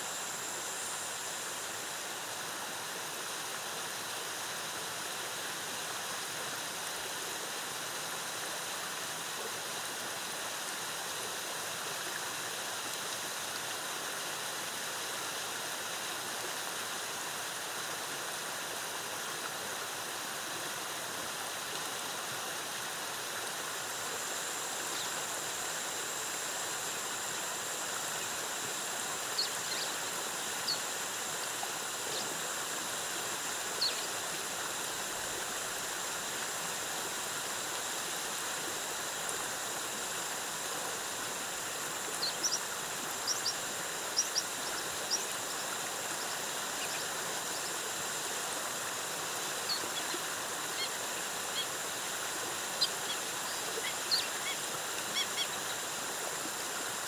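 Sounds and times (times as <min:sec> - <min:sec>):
waterfall rushing: 0:41.0 - 0:57.0.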